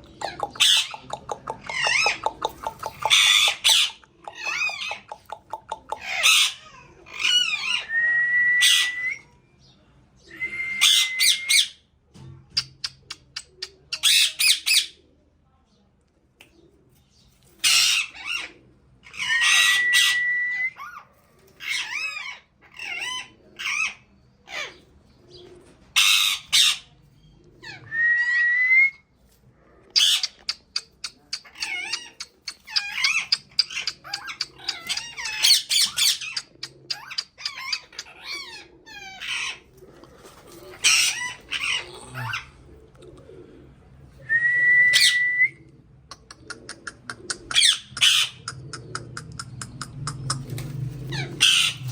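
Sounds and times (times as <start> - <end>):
parrot squawking and chirping: 0.2 - 7.9, 14.0 - 15.0, 17.6 - 20.2, 20.8 - 24.8, 26.0 - 26.9, 30.0 - 39.8, 40.7 - 42.7, 47.5 - 48.6, 49.8 - 51.9
parrot whistle: 7.7 - 9.2, 19.4 - 21.0.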